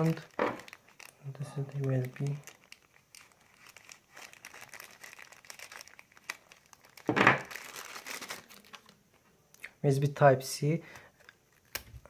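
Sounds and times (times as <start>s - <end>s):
packaging crinkling and rustling: 0.0s - 9.3s.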